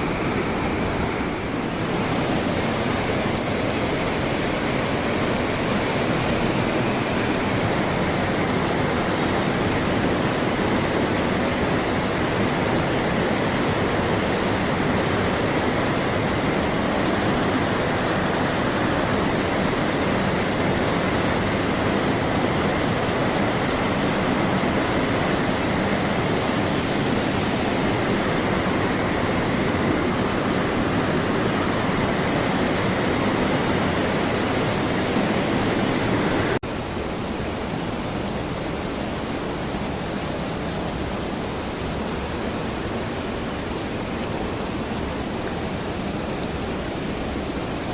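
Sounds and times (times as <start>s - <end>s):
river water flowing: 0.0s - 47.9s.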